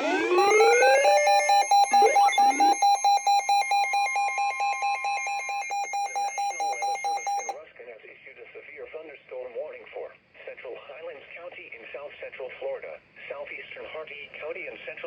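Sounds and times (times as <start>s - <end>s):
electronic alert alarm sweeps: 0.0s - 7.5s
rapid alarm beeping: 0.0s - 7.5s.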